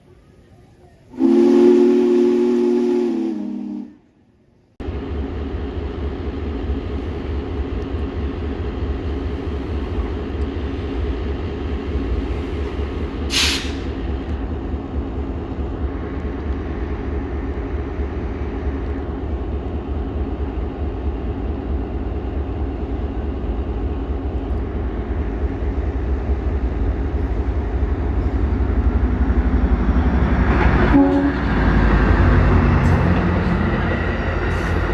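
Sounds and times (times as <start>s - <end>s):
train rumbling past: 0.0s - 34.9s
train horn: 1.1s - 4.2s, 30.8s - 31.7s.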